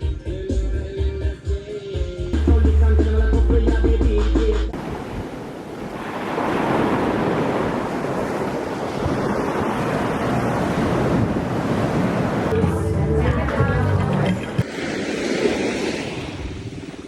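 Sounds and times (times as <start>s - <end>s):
surf washing onto beach: 4.8s - 12.6s, 14.2s - 17.0s.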